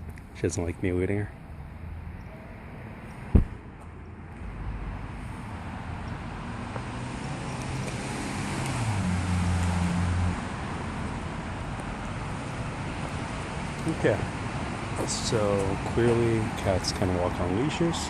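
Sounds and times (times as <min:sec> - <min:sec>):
sharp knock: 0:03.3 - 0:03.6.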